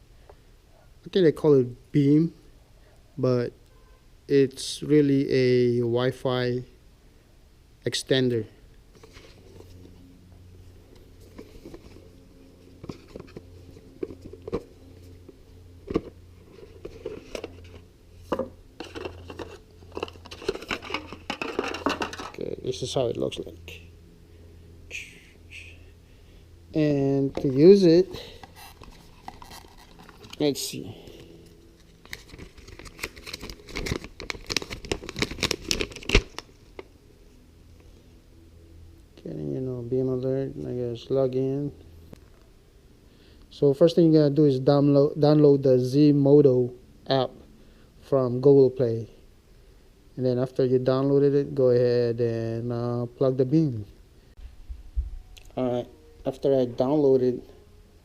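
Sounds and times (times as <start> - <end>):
steady low hum: 0.0 - 58.0
packaging crinkling and rustling: 18.8 - 22.4, 27.4 - 36.9.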